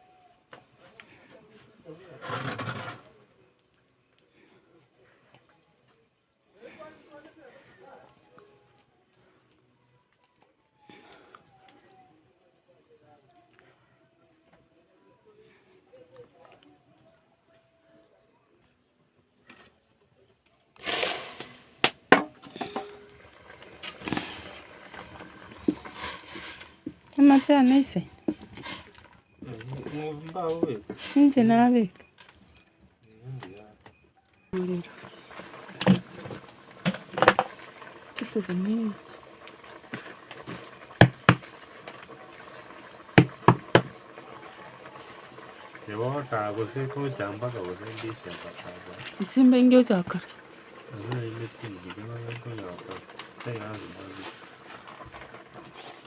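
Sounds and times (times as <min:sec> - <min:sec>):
small scrapes: 0:02.2 - 0:03.2, 0:20.8 - 0:21.8, 0:22.6 - 0:27.4, 0:52.9 - 0:56.0
hard objects clattering and knocking: 0:20.8 - 0:27.2, 0:34.9 - 0:38.3, 0:39.0 - 0:44.3.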